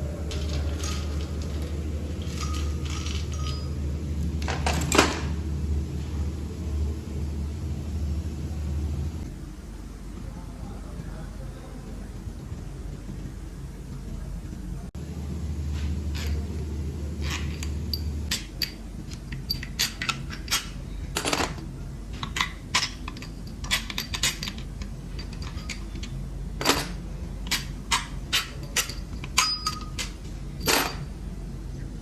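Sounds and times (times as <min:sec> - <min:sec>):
metal tools and parts clinking: 0:00.0 - 0:09.2, 0:15.5 - 0:31.2
steady low hum: 0:00.0 - 0:32.0.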